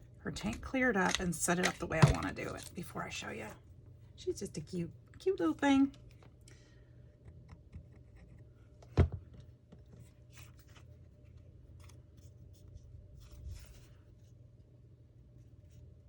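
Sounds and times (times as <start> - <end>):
paper and craft tools handled: 0.4 - 2.8.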